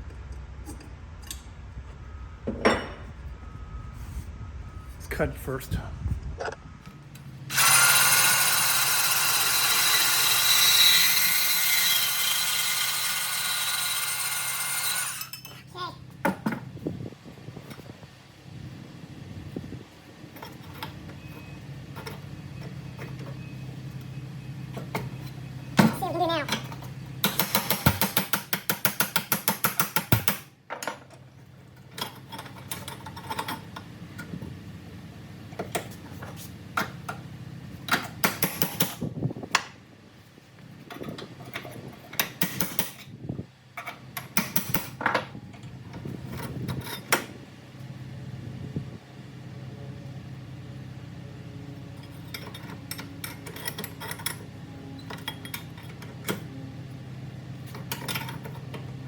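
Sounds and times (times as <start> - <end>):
steady low hum: 0.0 - 7.5
hand tools clinking on exhaust parts: 15.0 - 15.7, 24.9 - 34.3, 52.0 - 56.4.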